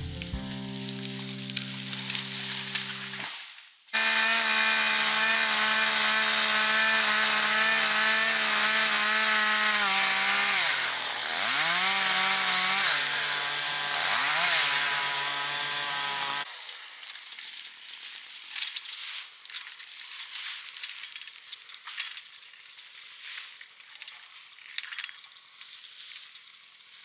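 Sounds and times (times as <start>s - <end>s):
chainsaw running at high revs: 4.0s - 17.2s.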